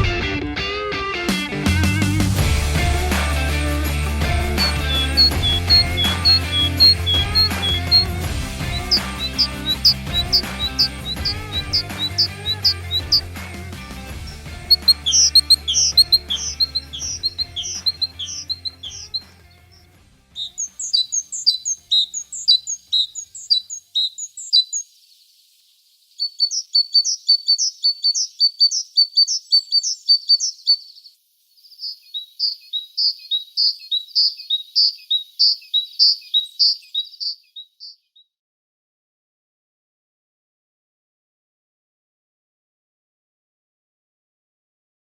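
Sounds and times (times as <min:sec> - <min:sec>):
background music: 0:00.0 - 0:22.3
songbird singing rapid high notes: 0:02.8 - 0:38.2.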